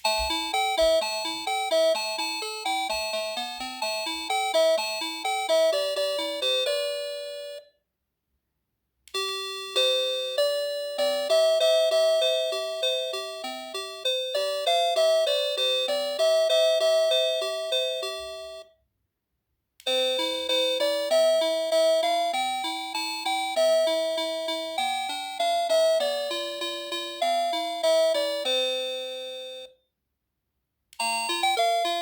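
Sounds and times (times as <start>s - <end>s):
doorbell electronic chime melody: 0.0s - 7.6s, 11.0s - 18.7s, 19.9s - 29.8s, 31.0s - 32.0s.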